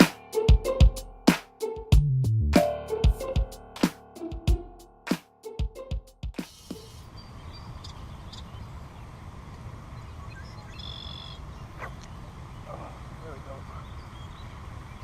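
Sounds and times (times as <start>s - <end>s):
faint bird chirps: 10.0s - 12.8s, 13.7s - 15.0s.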